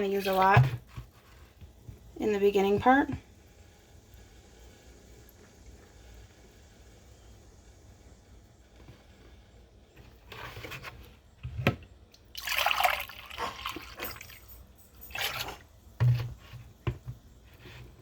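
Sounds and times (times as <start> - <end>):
liquid pouring into plastic jug: 12.1 - 17.0
knocks from handling jugs: 16.0 - 17.2.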